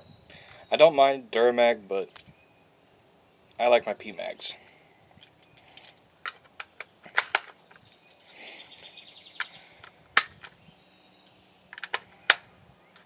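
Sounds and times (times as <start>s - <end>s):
rustle: 0.0s - 13.0s
cartridges clicking into magazine: 10.2s - 10.6s.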